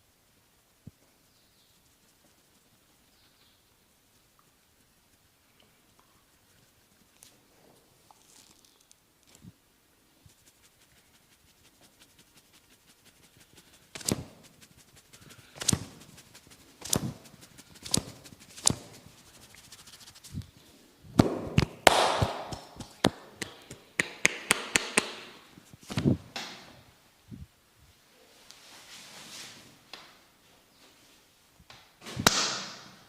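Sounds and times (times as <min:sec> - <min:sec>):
hands rubbing skin: 0:10.2 - 0:26.2
hands slapping on skin: 0:10.4 - 0:20.5, 0:21.2 - 0:26.2.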